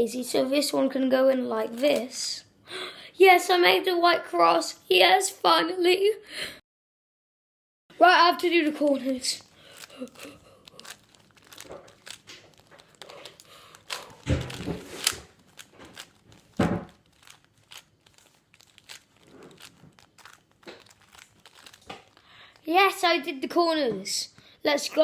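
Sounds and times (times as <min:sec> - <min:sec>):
plastic cube layers clicking: 0:09.7 - 0:22.2.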